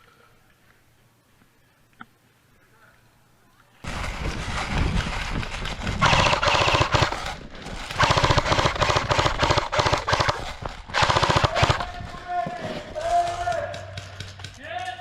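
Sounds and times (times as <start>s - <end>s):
airsoft gun rapid bursts: 6.0s - 12.1s.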